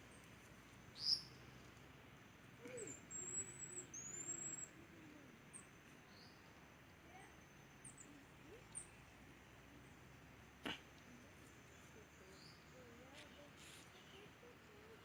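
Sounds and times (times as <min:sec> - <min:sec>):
marmoset chirp: 0:00.9 - 0:01.5, 0:02.6 - 0:04.8.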